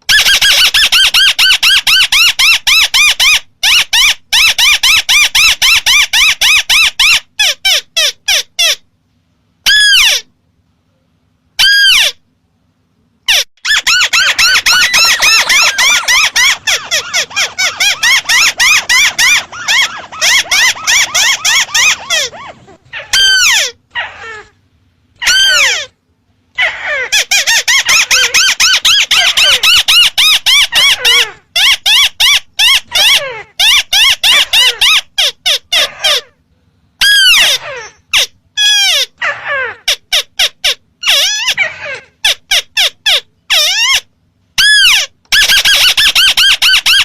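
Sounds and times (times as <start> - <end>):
crake call whinnying notes: 13.7 - 23.6.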